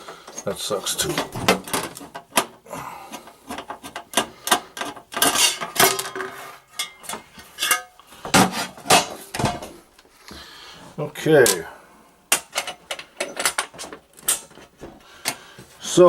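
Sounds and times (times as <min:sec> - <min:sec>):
clicks scrapes and knocks on metal cover: 0:01.0 - 0:09.2.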